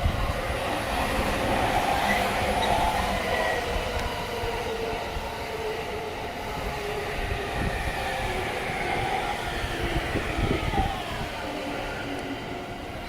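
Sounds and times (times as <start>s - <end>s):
train wheels rumbling on rails: 0.0s - 13.0s.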